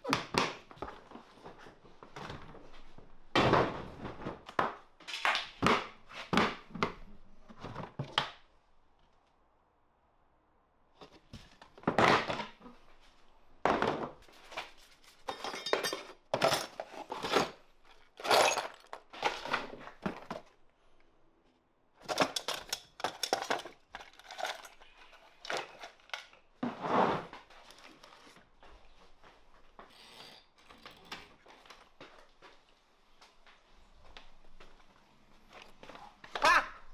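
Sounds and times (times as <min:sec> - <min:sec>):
tools and metal parts clinking: 0:15.2 - 0:19.6, 0:22.0 - 0:26.4.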